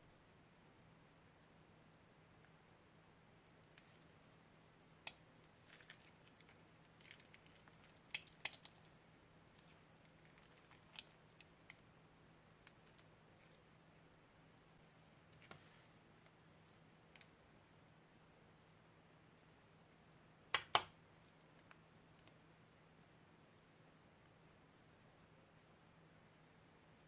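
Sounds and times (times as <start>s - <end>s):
crunchy slime being squished: 4.9s - 8.9s, 9.6s - 11.8s.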